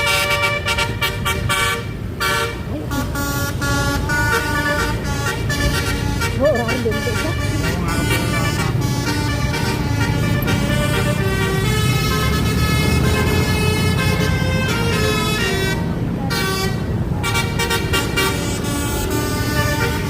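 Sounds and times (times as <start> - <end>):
bus horn playing a melody: 0.0 - 20.0
low engine rumble: 0.0 - 20.0.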